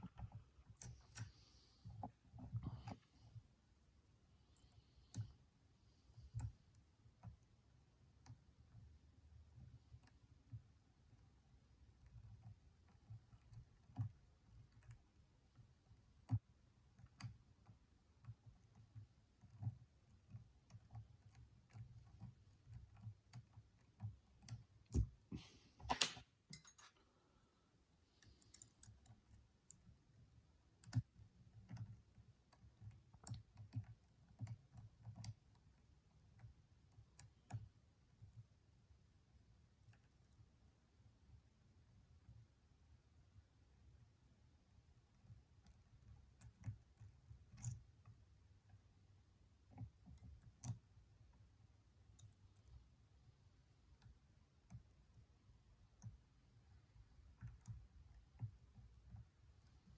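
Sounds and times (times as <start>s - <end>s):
lock pick clicking and scraping: 25.8s - 27.0s, 28.2s - 29.8s, 46.4s - 47.9s.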